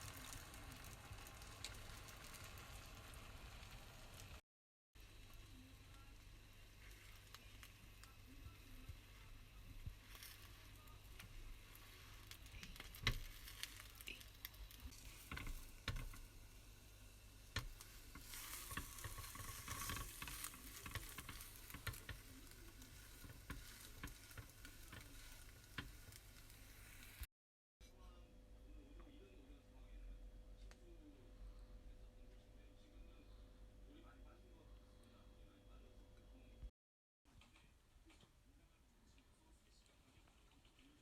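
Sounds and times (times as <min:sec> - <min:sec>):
food sizzling in a pan: 0:00.0 - 0:04.4, 0:05.0 - 0:27.3
utensil stirring and knocking pan: 0:14.9 - 0:16.6, 0:17.4 - 0:27.0.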